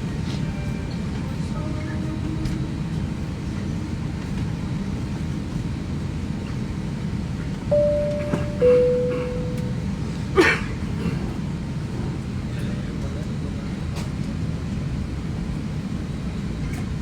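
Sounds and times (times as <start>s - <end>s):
two-note cabin chime: 7.7s - 10.2s
airliner cabin hum: 7.7s - 10.6s.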